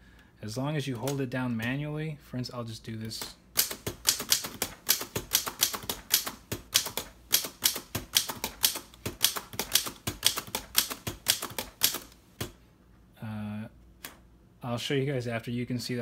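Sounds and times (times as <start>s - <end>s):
typewriter keys clacking: 3.2s - 12.2s.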